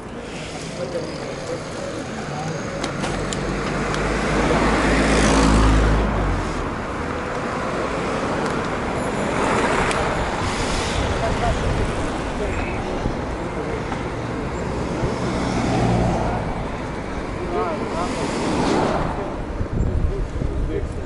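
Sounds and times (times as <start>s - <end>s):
vehicle passing by: 3.2s - 6.8s, 9.2s - 19.4s.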